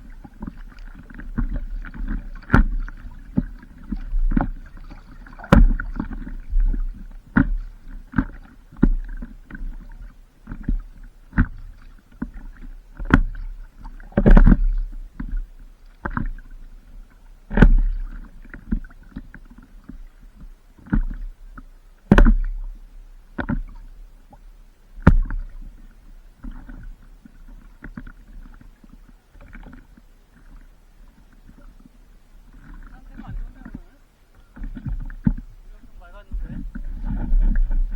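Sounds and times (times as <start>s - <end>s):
low rumble of water and wind: 0.0s - 37.9s
water slapping against paddleboard: 0.0s - 37.9s.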